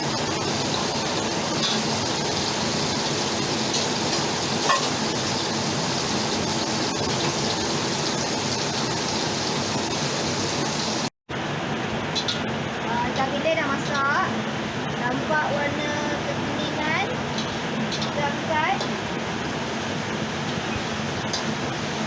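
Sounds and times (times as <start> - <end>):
fish sizzling in hot oil: 0.0 - 11.1, 16.2 - 22.0.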